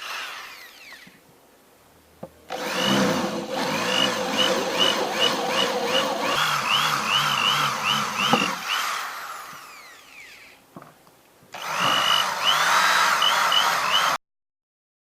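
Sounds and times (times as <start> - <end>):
electric drill running: 0.0 - 1.2, 2.5 - 10.6, 11.6 - 14.2.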